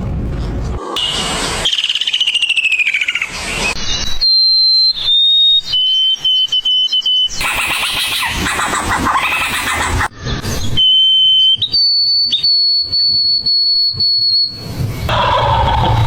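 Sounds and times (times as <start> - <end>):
long pure whistled bird notes: 1.0 - 7.7, 10.3 - 16.0.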